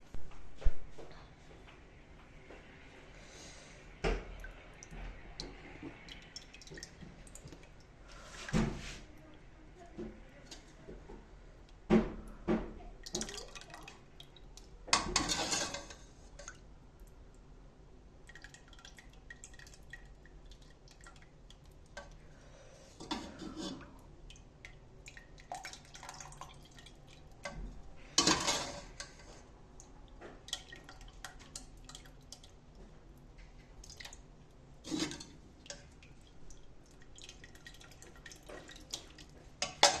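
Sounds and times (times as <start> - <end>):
dishes and utensils clinking: 14.9 - 16.1, 28.2 - 29.3, 39.6 - 40.0.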